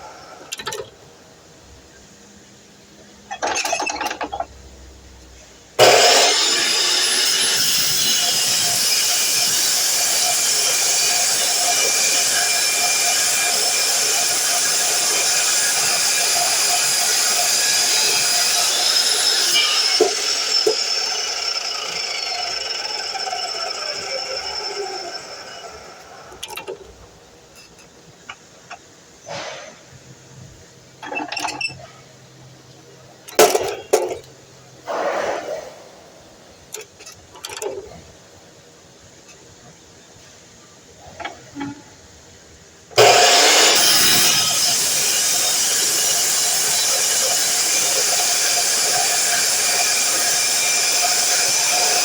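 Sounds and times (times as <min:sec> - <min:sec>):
miter saw motor whining: 0:05.8 - 0:26.5, 0:43.0 - 0:52.0.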